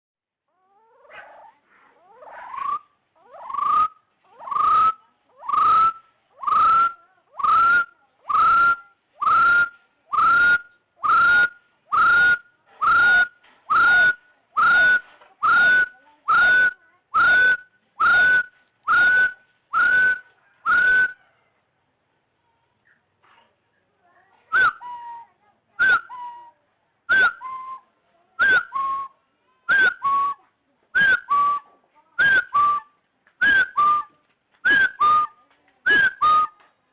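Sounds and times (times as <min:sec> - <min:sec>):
junglefowl throat calls: 0:00.6 - 0:21.6, 0:24.5 - 0:27.8.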